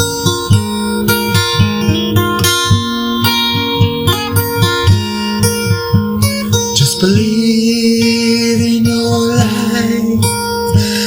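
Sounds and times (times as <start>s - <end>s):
acoustic guitar strumming: 0.0s - 11.0s
low thumping beat: 0.4s - 6.3s.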